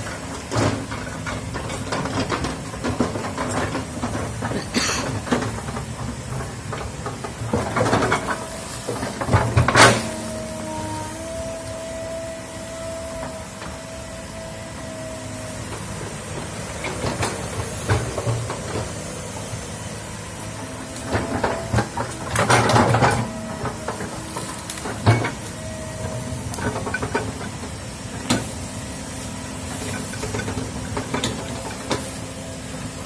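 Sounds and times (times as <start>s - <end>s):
diesel engine running: 0.0s - 33.0s
hydraulic whine: 0.0s - 33.0s
clanks and knocks: 20.9s - 27.6s.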